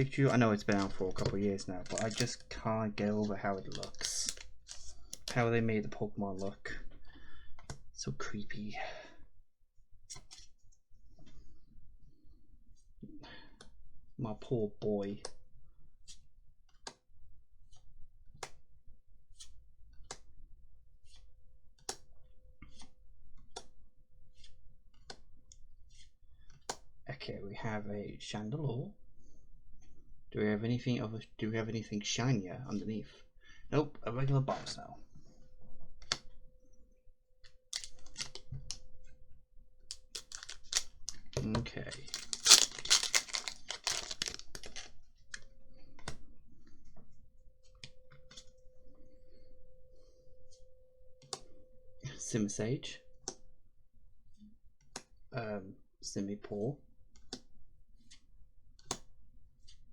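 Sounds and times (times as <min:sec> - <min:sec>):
foil wrapper crinkling: 0:01.8 - 0:02.5, 0:03.7 - 0:05.4, 0:37.8 - 0:38.3, 0:39.9 - 0:41.0, 0:41.9 - 0:44.9
card clicks: 0:37.8 - 0:38.2, 0:39.9 - 0:40.9, 0:42.0 - 0:44.8
cards swishing: 0:42.0 - 0:44.8.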